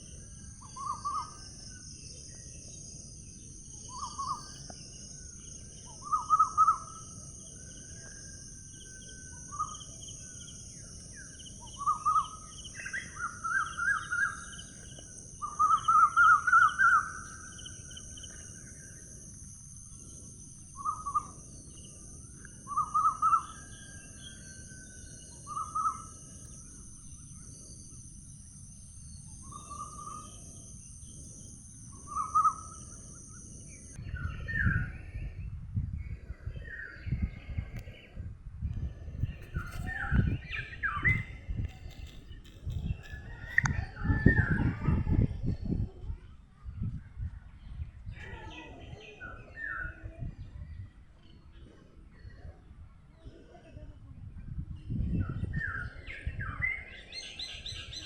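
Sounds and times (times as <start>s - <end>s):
insects buzzing: 0.0s - 35.3s.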